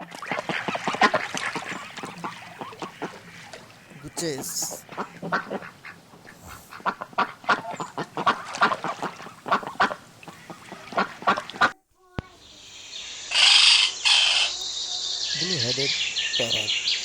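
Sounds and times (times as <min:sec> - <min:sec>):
waterfowl honking: 0:00.0 - 0:11.8, 0:13.3 - 0:14.6
loud hissing noise: 0:06.3 - 0:06.9.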